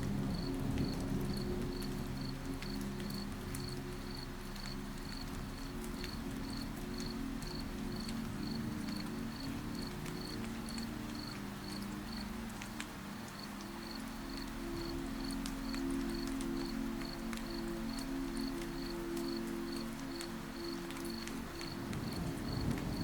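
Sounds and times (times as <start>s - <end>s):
crickets chirping: 0.3s - 12.3s, 13.2s - 23.0s
faint ticks: 0.4s - 23.0s.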